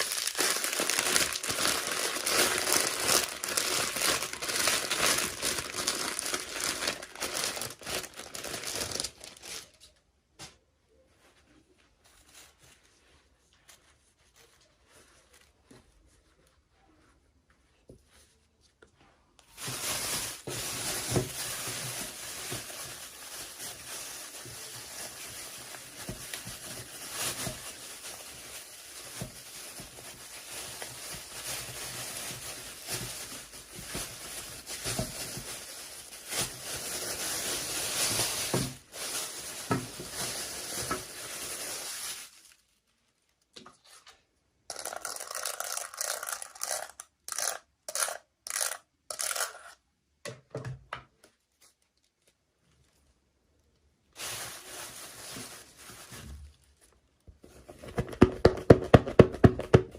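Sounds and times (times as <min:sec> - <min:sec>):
packaging crinkling and rustling: 0:00.0 - 0:10.0, 0:19.4 - 0:49.7, 0:54.1 - 0:59.9.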